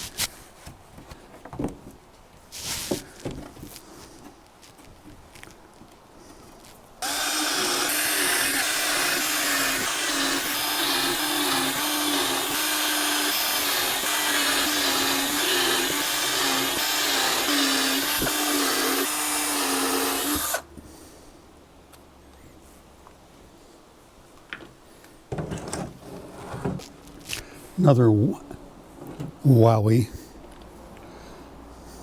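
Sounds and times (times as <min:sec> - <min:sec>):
power tool motor under load: 0:07.0 - 0:20.6.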